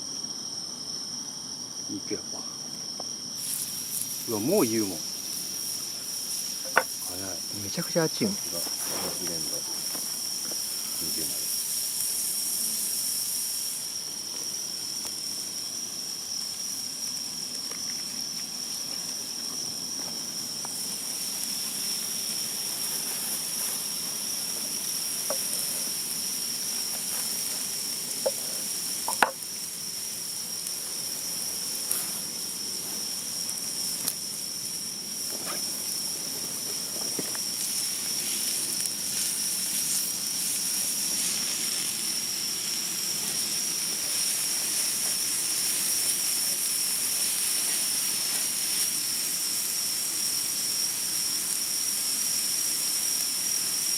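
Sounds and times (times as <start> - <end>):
food sizzling over fire: 0.0 - 53.9
fire crackles: 0.2 - 53.9.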